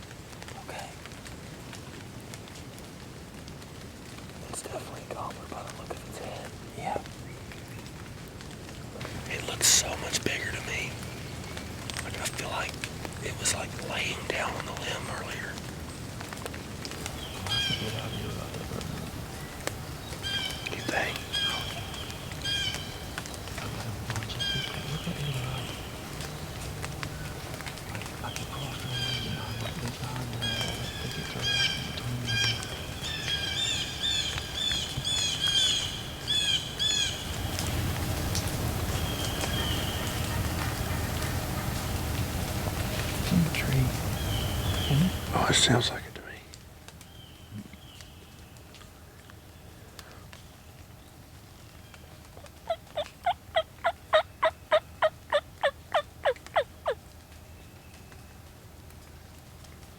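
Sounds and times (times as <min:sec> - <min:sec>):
turkey yelping: 0:17.0 - 0:19.3, 0:20.2 - 0:37.5, 0:52.4 - 0:57.0.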